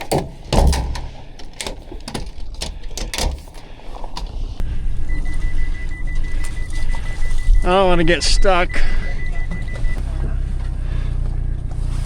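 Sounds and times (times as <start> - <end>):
boat gear knocking and rattling: 0.0 - 4.4
steady high tone: 4.7 - 10.0.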